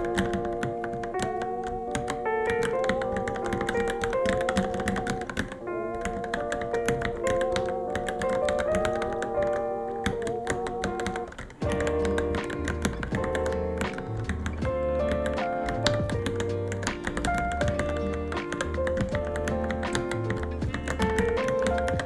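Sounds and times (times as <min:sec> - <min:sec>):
background music with melody: 0:00.0 - 0:22.0
rapid keyboard typing: 0:00.0 - 0:22.0
low bass line: 0:11.6 - 0:22.0.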